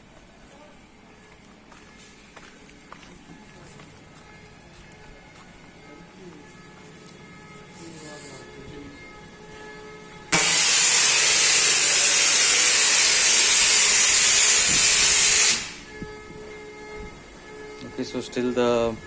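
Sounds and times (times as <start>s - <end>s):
compressed air hissing: 10.3s - 15.9s.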